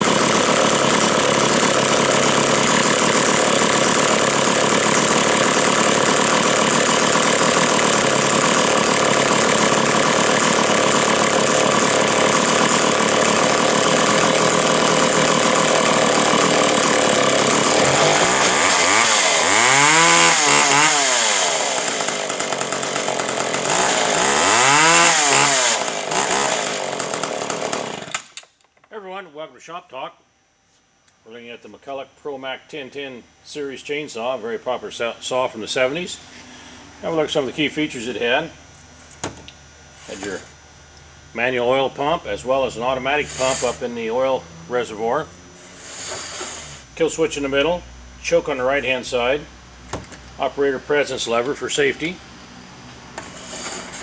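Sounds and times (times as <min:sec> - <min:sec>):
chainsaw running and revving: 0:00.0 - 0:28.4, 0:41.7 - 0:47.5, 0:53.1 - 0:54.0.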